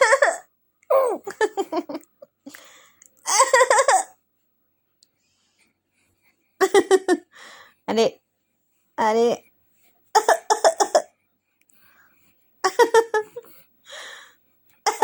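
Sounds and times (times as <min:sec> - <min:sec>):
baby giggling: 0:00.0 - 0:02.1, 0:10.2 - 0:11.1.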